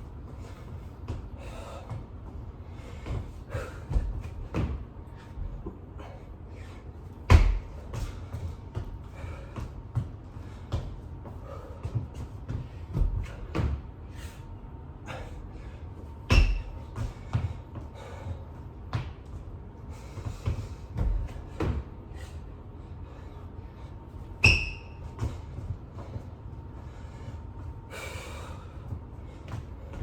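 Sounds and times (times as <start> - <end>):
hard breathing: 0.3 - 7.2, 7.8 - 19.1, 19.8 - 24.2, 25.2 - 30.0
hands and feet thudding on floor: 7.2 - 11.1.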